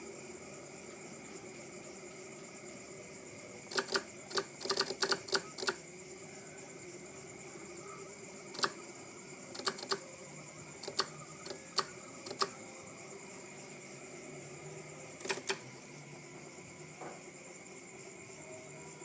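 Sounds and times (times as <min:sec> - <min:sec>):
faint high-pitched electrical whine: 0:00.0 - 0:19.0
sharp clicks: 0:03.7 - 0:05.8, 0:08.5 - 0:08.8, 0:09.5 - 0:10.0, 0:10.8 - 0:12.6, 0:15.2 - 0:15.7.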